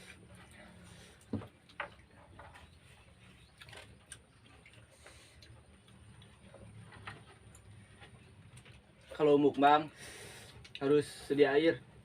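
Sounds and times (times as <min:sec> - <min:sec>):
chewing clicks and mouth sounds: 0:03.4 - 0:09.1.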